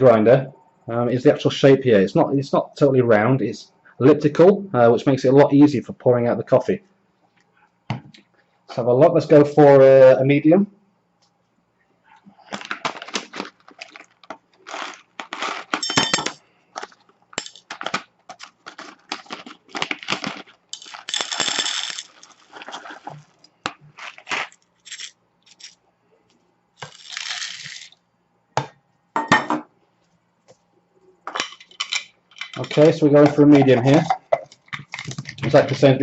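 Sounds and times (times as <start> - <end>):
coffee beans rattling: 12.6 - 25.8, 26.8 - 28.0.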